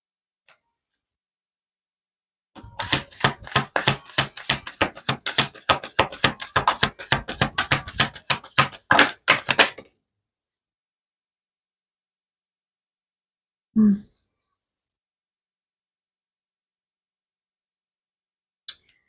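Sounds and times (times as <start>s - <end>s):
cards being shuffled by hand: 2.6s - 9.8s.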